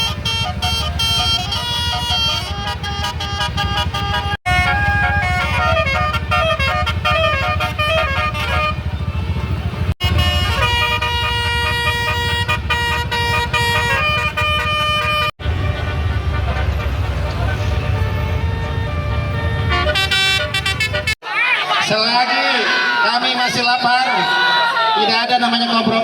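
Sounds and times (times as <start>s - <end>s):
air horns playing a tune: 0.0s - 9.0s, 10.0s - 21.2s.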